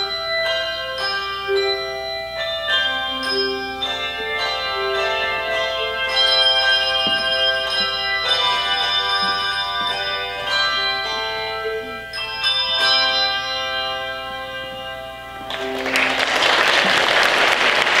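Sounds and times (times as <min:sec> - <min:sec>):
handbell choir ringing chords: 0:00.0 - 0:18.0
audience applause: 0:15.5 - 0:18.0.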